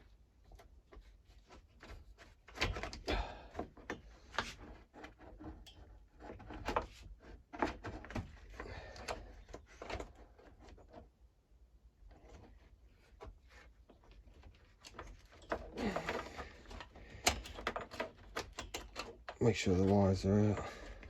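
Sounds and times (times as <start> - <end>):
clicks and knocks of parts: 0.5 - 11.1, 12.1 - 21.0.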